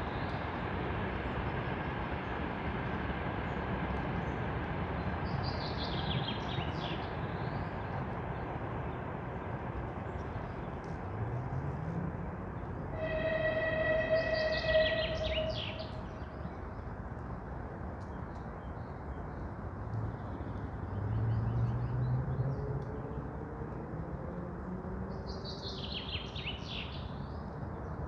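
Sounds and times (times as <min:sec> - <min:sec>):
dense forest background rush: 0:00.0 - 0:28.0
held tone with overtones: 0:13.0 - 0:15.8
bird chirps: 0:13.0 - 0:16.2.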